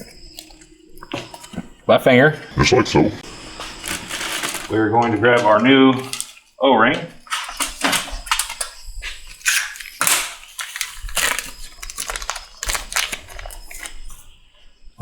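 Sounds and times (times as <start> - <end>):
short clicks and crinkling: 5.4 - 6.5, 7.2 - 14.3.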